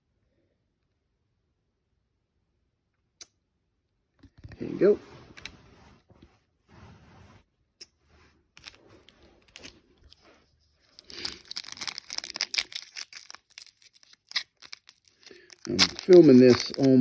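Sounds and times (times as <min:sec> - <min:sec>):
plastic wrapper crinkling: 0:08.6 - 0:17.0.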